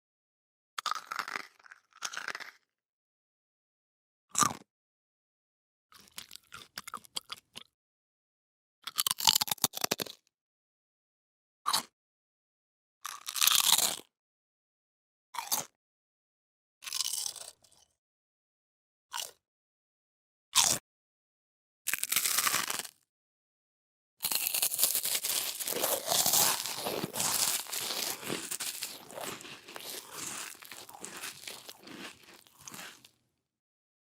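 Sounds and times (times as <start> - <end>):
crunchy biting and chewing: 24.2 - 33.1.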